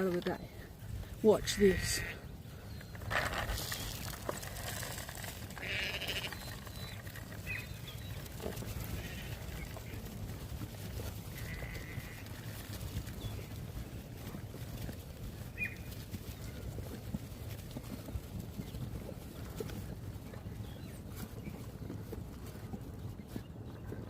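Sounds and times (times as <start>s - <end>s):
lambs bleating: 1.4s - 2.3s, 5.4s - 7.0s, 8.8s - 9.4s, 11.4s - 12.3s.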